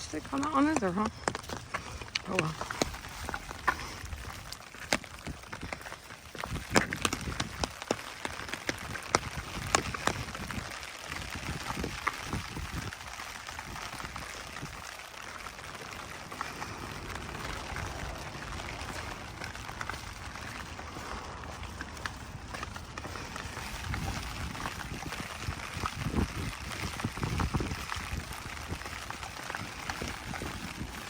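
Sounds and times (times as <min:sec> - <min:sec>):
steady rain falling: 0:07.0 - 0:31.0.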